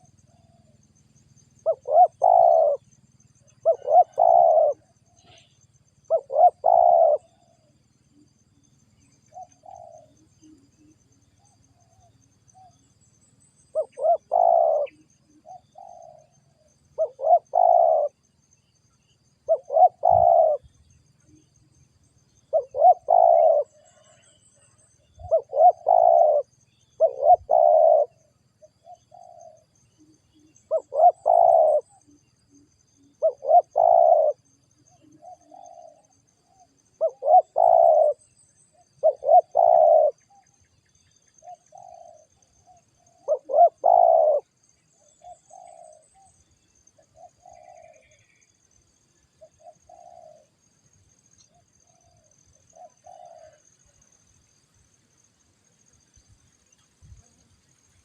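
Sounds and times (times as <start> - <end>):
dove cooing: 0.0 - 0.8, 1.6 - 7.7, 9.3 - 10.6, 13.7 - 18.2, 19.4 - 20.8, 22.4 - 29.7, 30.5 - 40.7, 41.4 - 46.4, 47.0 - 48.4, 49.4 - 50.6, 51.5 - 53.7.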